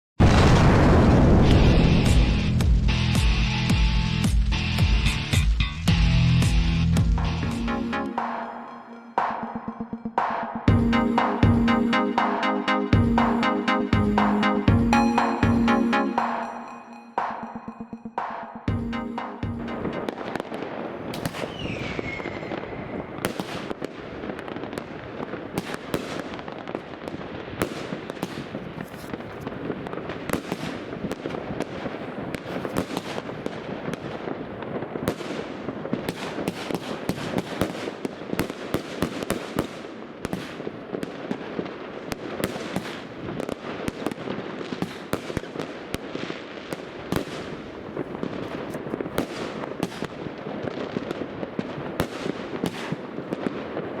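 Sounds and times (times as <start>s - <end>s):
firework cake firing shots: 21.1s - 22.4s, 23.2s - 24.8s, 27.6s - 29.2s, 32.4s - 34.0s, 35.1s - 40.7s, 44.8s - 45.8s, 52.0s - 53.5s
falling firework whistle: 21.1s - 23.7s.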